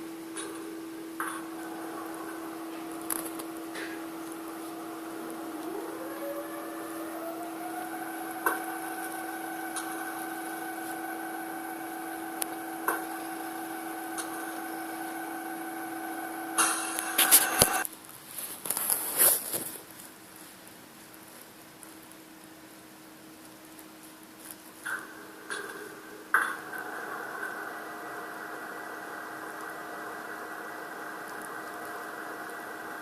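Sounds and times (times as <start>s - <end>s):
rising whine: 1.2s - 17.8s, 26.4s - 33.0s
model locomotive hum: 1.2s - 17.9s, 26.4s - 33.0s
clicks: 7.7s - 15.4s.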